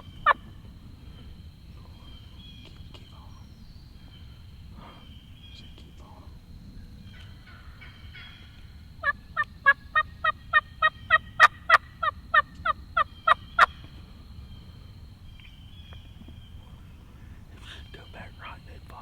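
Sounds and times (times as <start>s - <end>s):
turkey call yelps: 7.1s - 13.8s.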